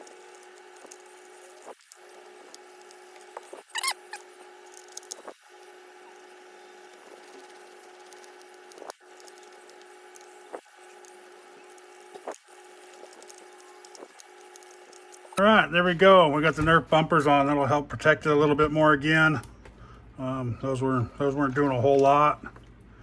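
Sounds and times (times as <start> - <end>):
steady hum: 0.0 - 23.0
brief squeak: 3.7 - 4.3.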